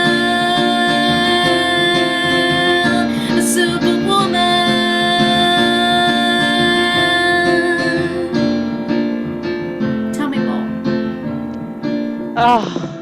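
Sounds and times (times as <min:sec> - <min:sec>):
woman singing a long note: 0:00.0 - 0:08.5
plucked instrumental accompaniment: 0:00.0 - 0:13.0.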